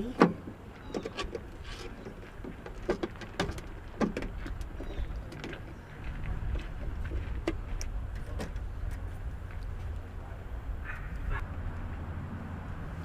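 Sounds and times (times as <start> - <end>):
clicks and knocks of compartment: 0.2 - 5.7.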